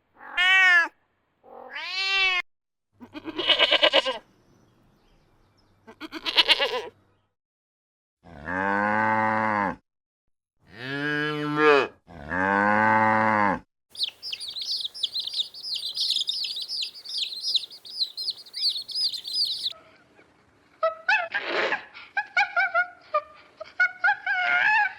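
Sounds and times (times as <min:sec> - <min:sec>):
small birds chirping: 0:14.0 - 0:19.8.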